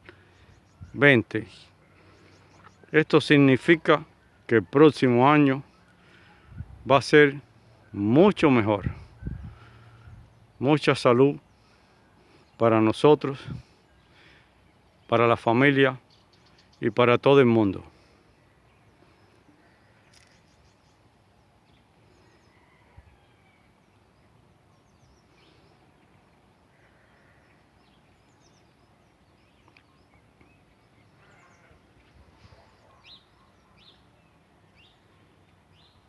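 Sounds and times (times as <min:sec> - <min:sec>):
faint bird calls: 0:04.1 - 0:10.6, 0:17.9 - 0:36.0.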